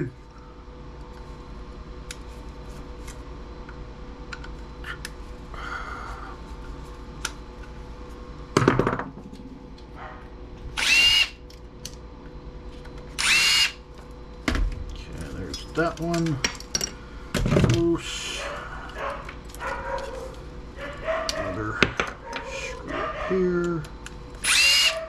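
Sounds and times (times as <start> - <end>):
power drill spinning: 10.8 - 11.4, 13.2 - 13.8, 24.4 - 25.0
light clicks of parts: 15.1 - 17.0.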